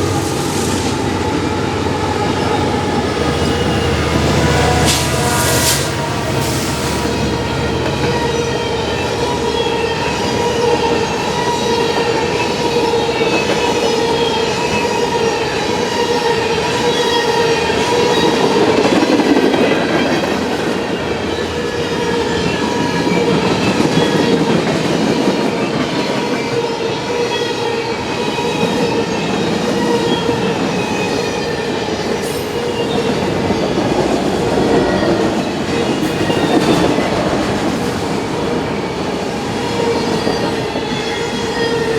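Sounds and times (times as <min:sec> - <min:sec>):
train wheels rumbling and clattering: 0:00.0 - 0:41.9.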